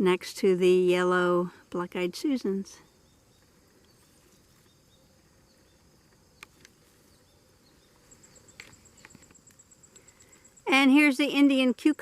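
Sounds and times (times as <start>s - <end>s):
faint outdoor hiss: 0.0s - 12.0s
pulsed insect call: 0.1s - 12.0s
soft clicks: 6.1s - 6.8s.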